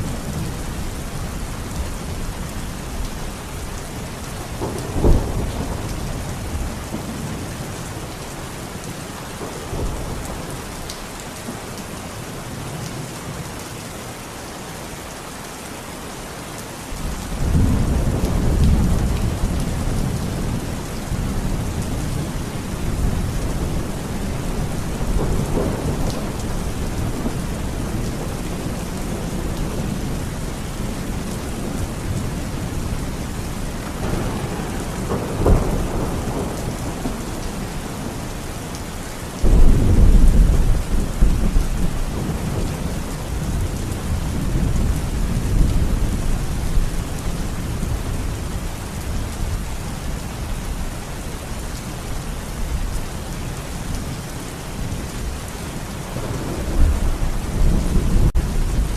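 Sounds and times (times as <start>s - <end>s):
heavy rain falling: 0.0s - 58.9s
thunder rumbling: 17.0s - 38.5s, 39.4s - 49.6s, 56.1s - 58.9s.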